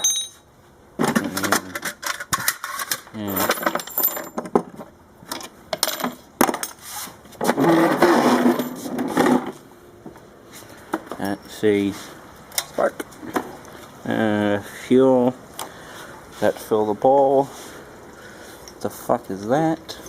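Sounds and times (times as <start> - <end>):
high metallic ring: 0.0 - 0.5
metal objects clattering: 0.0 - 6.8, 7.4 - 9.6.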